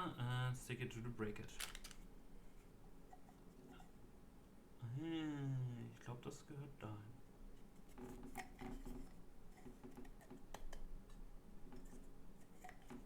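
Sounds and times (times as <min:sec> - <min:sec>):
camera parts clicking and knocking: 0:01.6 - 0:02.0.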